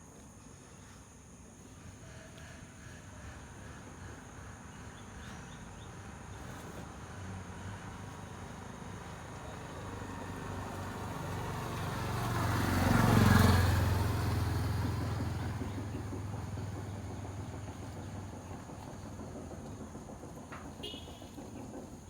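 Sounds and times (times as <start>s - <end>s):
vehicle driving past: 6.8s - 21.8s.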